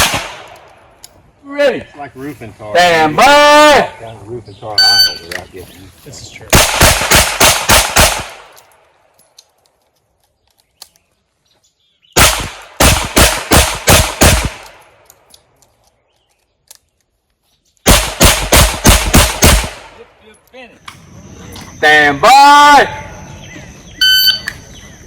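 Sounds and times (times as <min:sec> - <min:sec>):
revolver gunshots: 0:00.0 - 0:00.7, 0:06.5 - 0:08.6, 0:12.2 - 0:15.0, 0:17.9 - 0:20.0.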